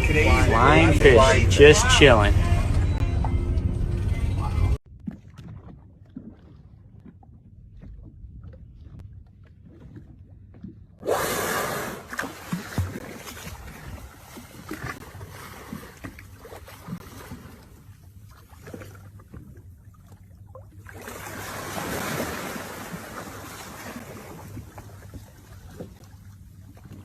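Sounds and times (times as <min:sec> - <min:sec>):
low hum: 0:00.0 - 0:15.2
wind and water rushing: 0:11.0 - 0:17.8, 0:20.8 - 0:26.1.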